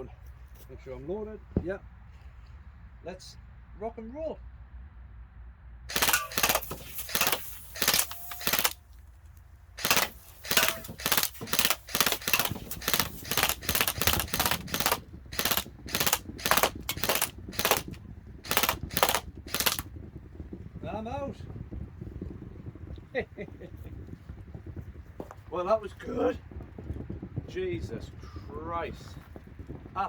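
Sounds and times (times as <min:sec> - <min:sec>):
airsoft gun shots: 0:05.9 - 0:08.8, 0:09.8 - 0:19.9.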